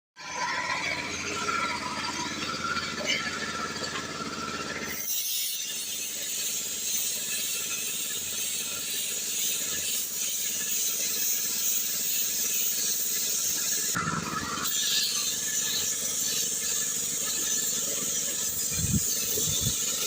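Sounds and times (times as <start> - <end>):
paint spray gun hissing: 4.6 - 20.0.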